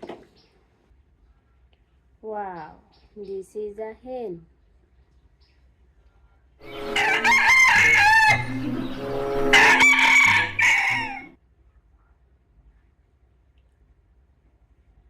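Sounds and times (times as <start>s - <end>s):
rooster crowing: 6.6s - 11.3s.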